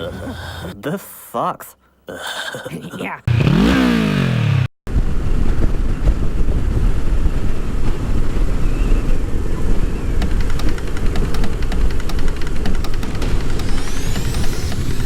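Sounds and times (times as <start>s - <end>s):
wind buffeting microphone: 4.9s - 15.0s.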